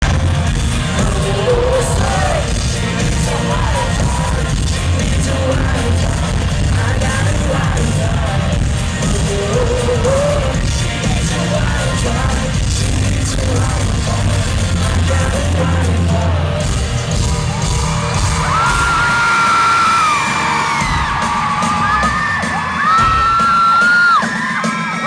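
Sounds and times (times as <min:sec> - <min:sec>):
heavy bass and drums: 0:00.0 - 0:25.0
live pop-rock band: 0:00.0 - 0:25.0
crowd screaming: 0:16.6 - 0:25.0.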